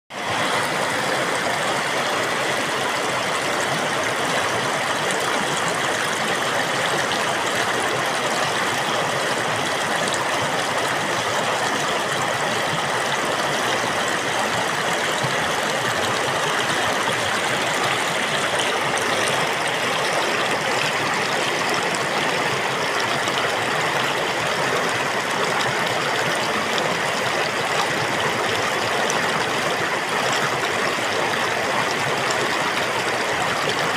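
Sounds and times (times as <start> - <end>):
water flowing: 0.1 - 33.9.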